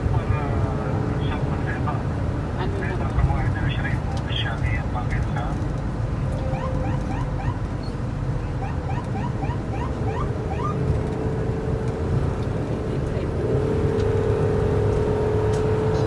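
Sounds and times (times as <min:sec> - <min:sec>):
engine and road rumble: 0:00.0 - 0:16.0
steady siren tone: 0:06.4 - 0:07.8, 0:08.4 - 0:10.8
rising siren chirps: 0:06.4 - 0:10.9.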